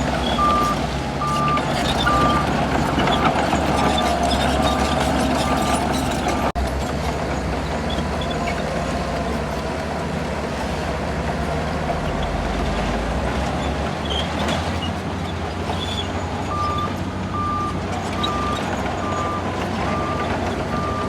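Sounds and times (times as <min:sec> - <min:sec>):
bulldozer diesel engine running: 0:00.0 - 0:21.0
reversing alarm beeping: 0:00.3 - 0:04.8, 0:16.5 - 0:21.0.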